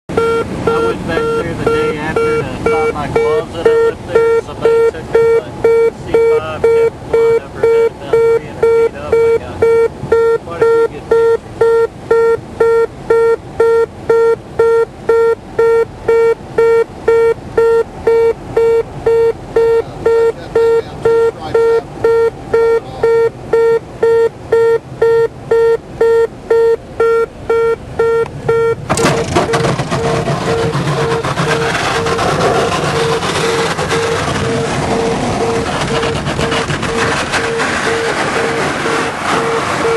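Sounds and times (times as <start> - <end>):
warning horn beeping: 0.1 - 39.9
loud rushing noise: 28.8 - 39.9.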